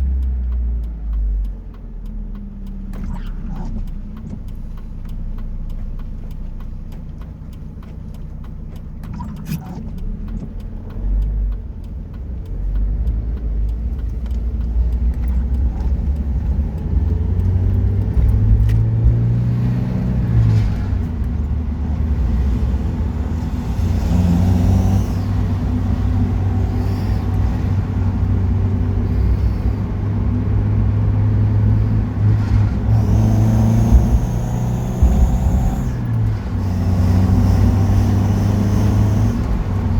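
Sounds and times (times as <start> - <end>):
car engine revving while driving: 0.0 - 39.9
high whirring whine: 15.6 - 39.9.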